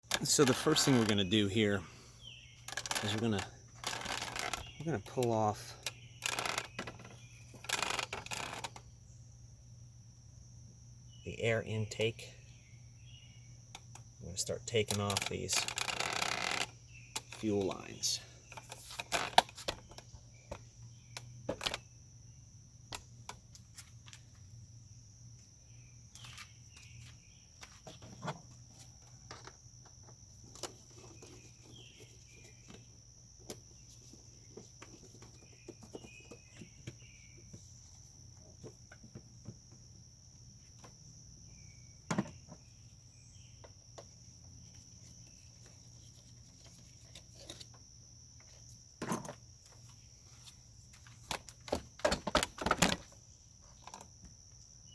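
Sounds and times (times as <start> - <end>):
hand tools clicking and knocking: 0.0 - 1.4, 2.7 - 8.8.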